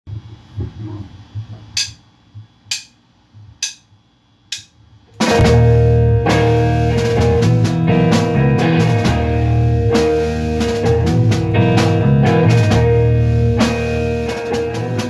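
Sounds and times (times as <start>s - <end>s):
sharp count-in clicks: 2.7s - 3.0s, 3.6s - 3.8s
rock band playing: 5.2s - 15.0s.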